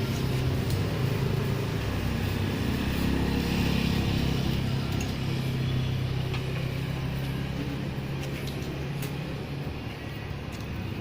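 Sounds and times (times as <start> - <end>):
road and wind noise: 0.0 - 11.0
vehicle engine humming: 0.0 - 11.0.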